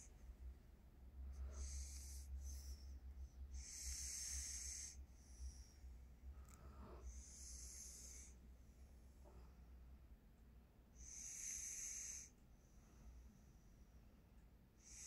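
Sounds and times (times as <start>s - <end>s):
person snoring wheezily: 3.6s - 5.0s.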